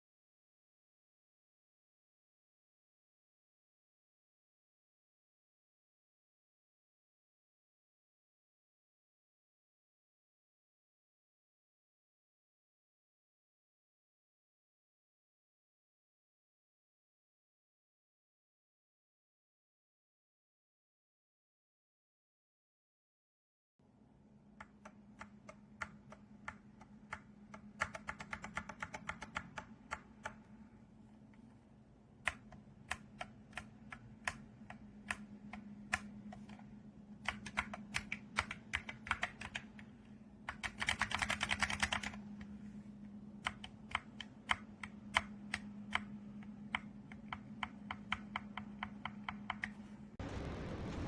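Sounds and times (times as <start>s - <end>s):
mechanical keyboard typing: 24.6s - 30.5s, 32.2s - 42.3s, 43.4s - 49.8s
low hum: 49.8s - 51.0s.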